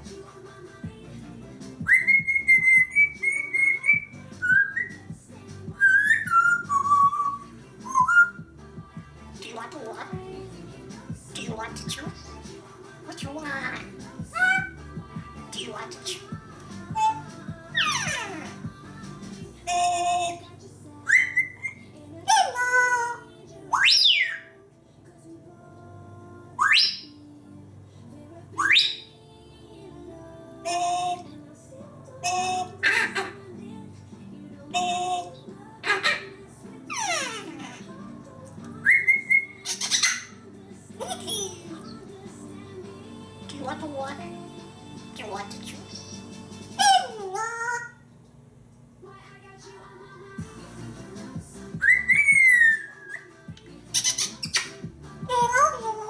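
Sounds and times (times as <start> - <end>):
parrot whistling a tune: 1.8 - 5.2, 5.8 - 8.5, 17.0 - 18.6, 21.0 - 21.8, 23.7 - 24.5, 26.6 - 27.1, 28.6 - 29.1, 38.8 - 40.4, 51.8 - 53.3, 53.9 - 54.8.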